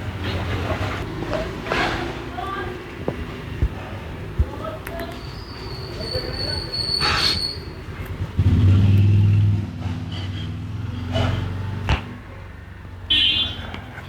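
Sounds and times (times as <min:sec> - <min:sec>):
vehicle engine humming: 0:07.8 - 0:14.0.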